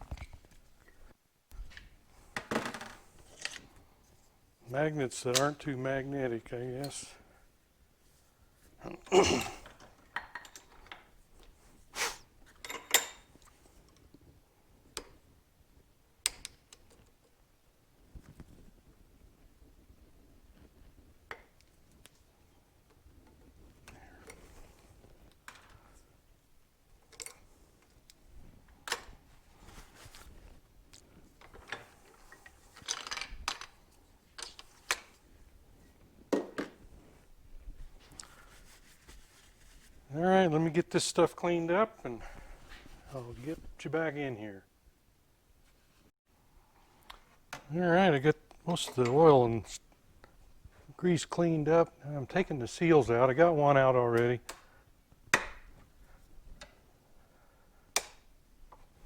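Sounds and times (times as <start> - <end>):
metal tools clinking: 12.6 - 13.3.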